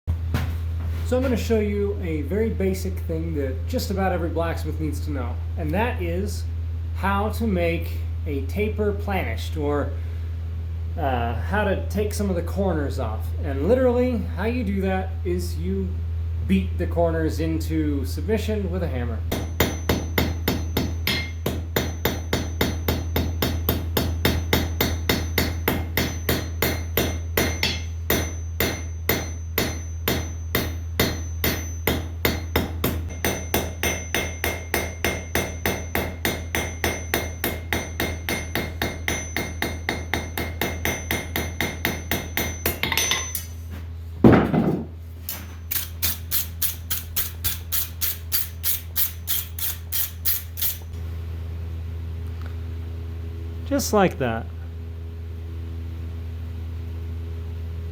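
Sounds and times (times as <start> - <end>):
steady low hum: 0.1 - 57.9
hammer striking steel on anvil: 19.3 - 43.6, 45.3 - 50.8.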